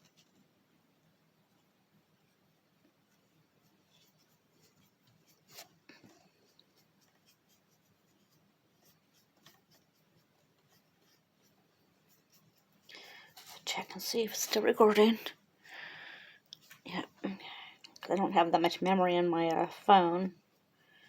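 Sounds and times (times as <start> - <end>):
scratchy paintbrush strokes: 1.5 - 15.1
brush scrape: 3.0 - 14.4.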